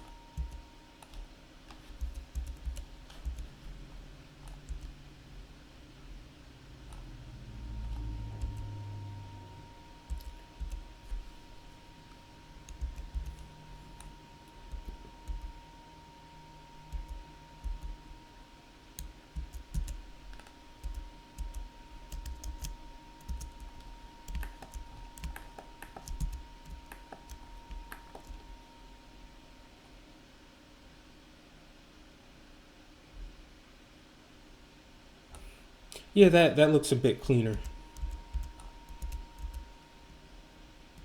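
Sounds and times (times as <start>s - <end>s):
faint high hum: 0.0s - 41.0s
faint steady hiss: 0.0s - 41.0s
low hum: 2.6s - 18.2s.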